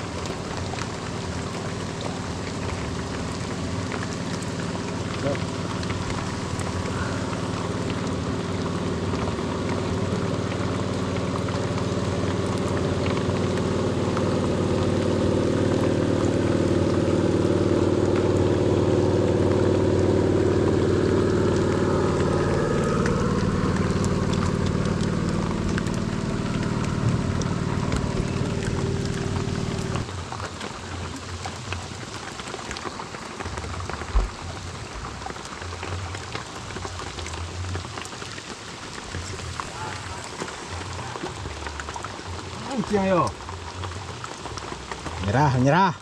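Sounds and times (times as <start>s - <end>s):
engine droning: 0.0s - 46.0s
heavy rain falling: 0.0s - 46.0s.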